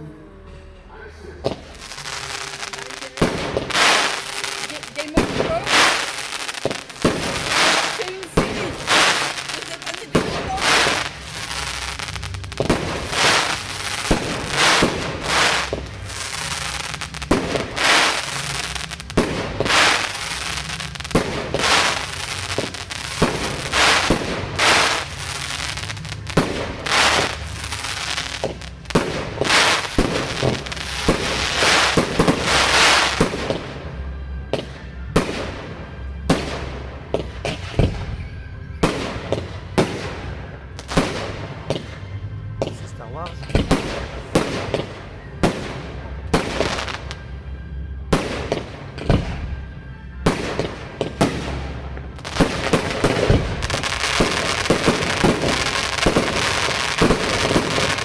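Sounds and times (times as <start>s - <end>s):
firework bangs: 1.4s - 58.0s
fireworks crackling: 1.4s - 58.0s.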